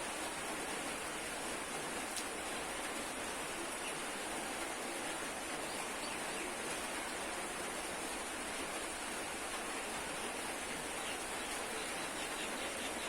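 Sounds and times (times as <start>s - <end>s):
faint click: 2.1s - 2.3s.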